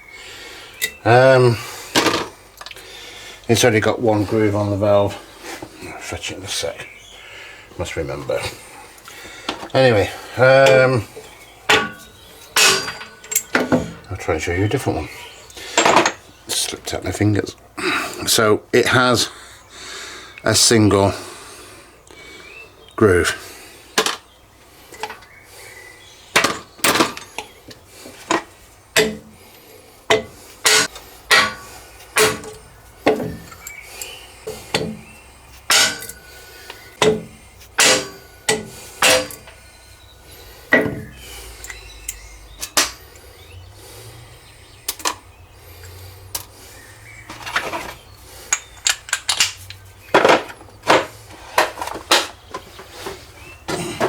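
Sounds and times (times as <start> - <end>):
loose metal parts clinking: 0.8 - 1.1, 8.3 - 16.8, 24.9 - 25.3, 26.3 - 39.8, 40.4 - 43.2, 47.2 - 54.0.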